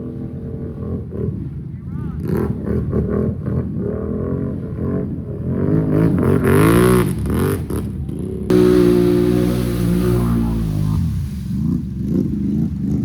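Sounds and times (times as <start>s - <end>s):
engine revving: 8.5s - 13.0s.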